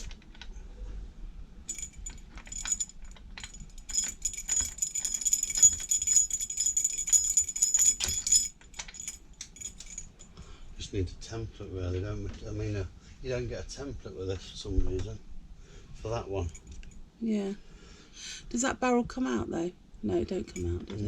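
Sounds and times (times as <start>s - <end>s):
metal keys jangling: 1.7s - 10.3s.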